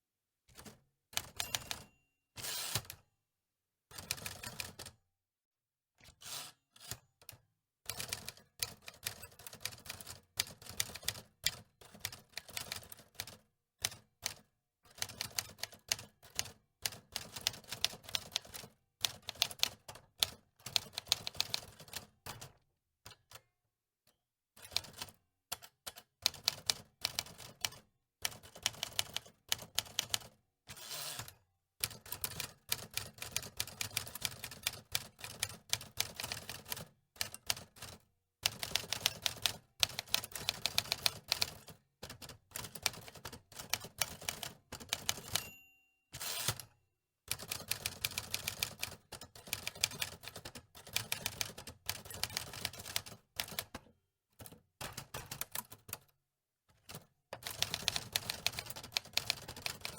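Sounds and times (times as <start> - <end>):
typewriter keys clacking: 38.5 - 45.5, 57.4 - 59.9.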